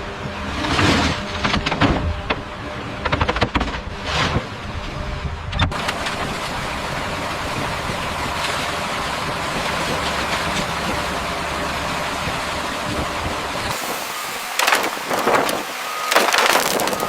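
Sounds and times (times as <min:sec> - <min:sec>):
engine running with hiss: 0:05.7 - 0:17.0.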